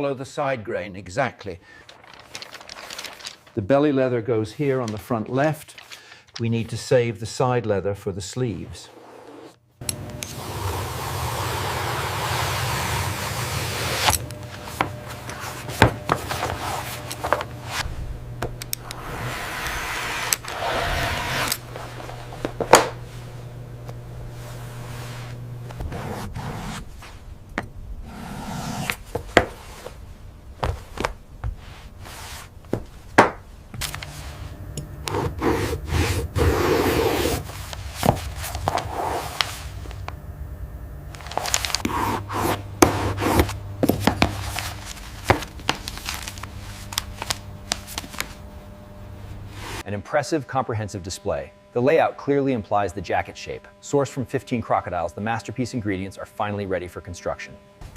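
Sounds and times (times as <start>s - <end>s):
leather rubbing and scraping: 8.8s - 9.6s, 10.4s - 17.9s, 18.9s - 23.4s, 24.3s - 27.2s, 28.0s - 33.2s, 35.1s - 39.9s, 41.2s - 48.3s
low steady hum: 12.8s - 57.9s.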